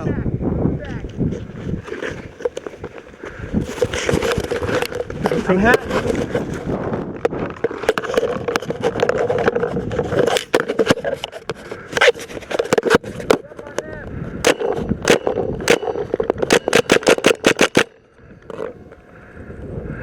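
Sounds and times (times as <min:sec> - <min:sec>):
paintball markers firing: 0:14.4 - 0:17.9.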